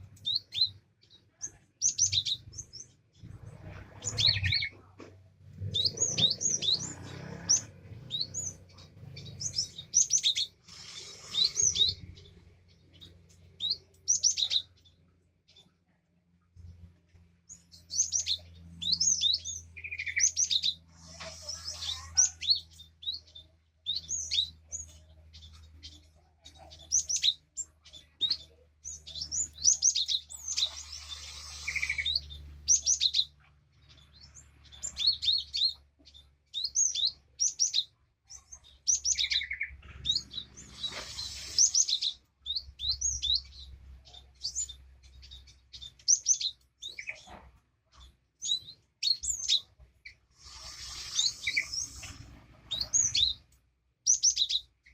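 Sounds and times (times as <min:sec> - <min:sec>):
bird chirping and whistling: 0:05.7 - 0:08.6, 0:09.2 - 0:12.0, 0:29.1 - 0:33.3, 0:36.6 - 0:37.9, 0:38.9 - 0:43.7, 0:48.4 - 0:49.6, 0:50.4 - 0:53.4, 0:54.1 - 0:54.7
harsh rasping bird call: 0:05.7 - 0:12.1, 0:29.9 - 0:33.2, 0:50.3 - 0:53.4.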